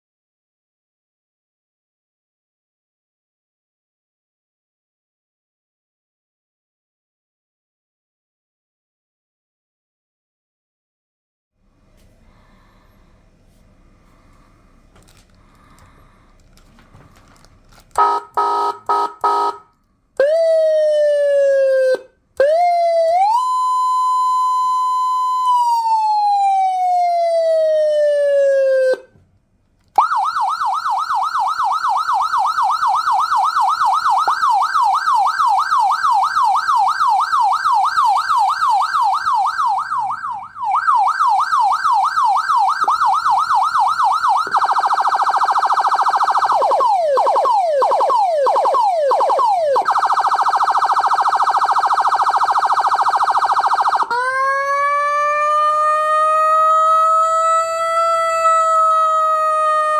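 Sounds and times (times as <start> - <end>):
electronic siren switching tones: 18.0 - 29.2, 30.0 - 59.9.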